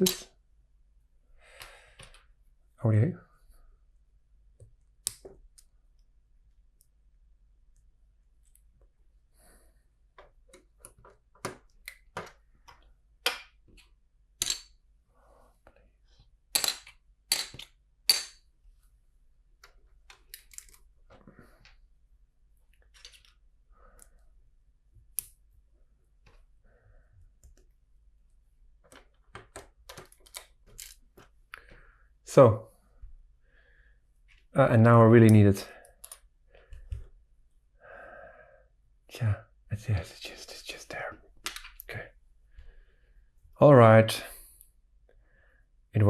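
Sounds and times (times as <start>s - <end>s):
plastic bricks clicking and clacking: 16.5s - 18.4s.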